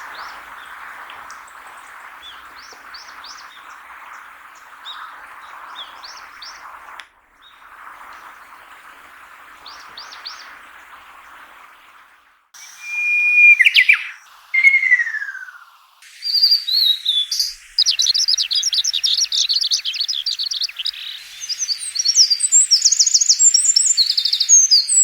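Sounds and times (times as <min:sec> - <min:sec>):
steady background hiss: 0:12.5 - 0:25.0
small birds chirping: 0:12.6 - 0:25.0.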